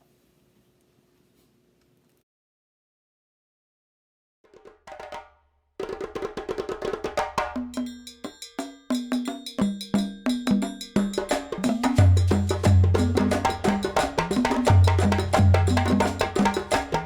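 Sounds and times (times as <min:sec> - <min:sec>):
upbeat percussion music: 0:04.7 - 0:17.0.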